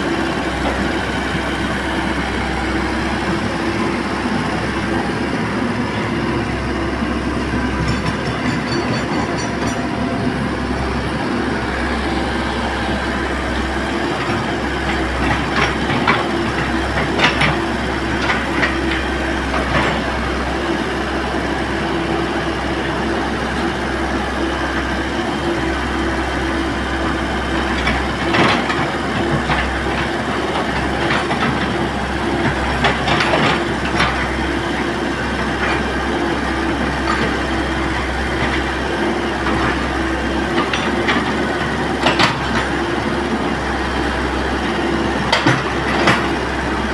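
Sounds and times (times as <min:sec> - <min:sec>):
excavator diesel engine running: 0:00.0 - 0:46.9
sharp metallic clanks: 0:07.8 - 0:10.0.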